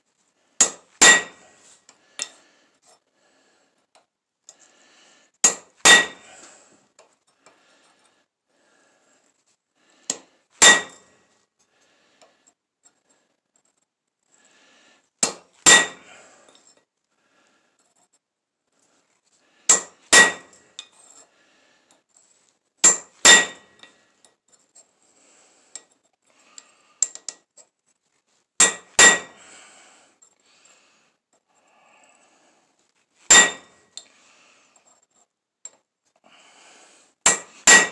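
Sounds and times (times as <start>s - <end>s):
hammer striking steel on anvil: 0.6s - 1.5s, 5.4s - 6.3s, 10.1s - 11.0s, 15.2s - 16.1s, 19.7s - 20.6s, 22.8s - 23.9s, 28.6s - 29.4s, 33.3s - 33.8s, 37.3s - 37.9s.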